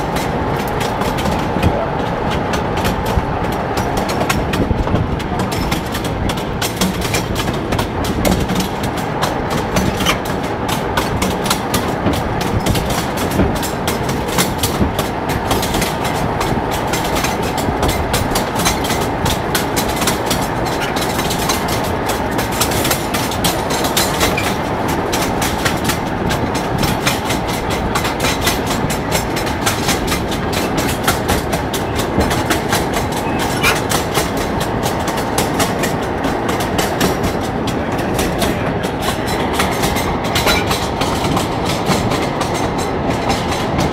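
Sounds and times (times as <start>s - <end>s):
wheels clattering over rail joints: 0.0s - 43.9s.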